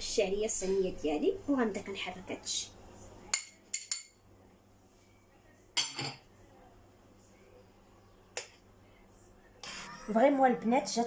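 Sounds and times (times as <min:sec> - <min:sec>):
utensil clinking against cookware: 0:03.3 - 0:04.2.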